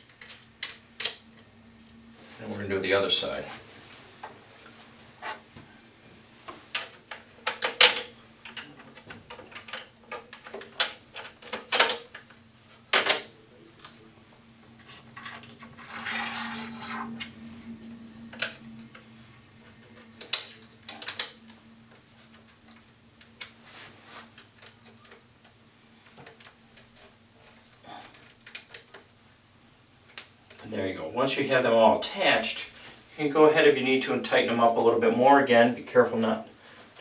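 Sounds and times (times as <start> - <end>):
faint steady hum: 0.0 - 37.0
scraping rustle: 14.7 - 18.0, 23.5 - 24.5.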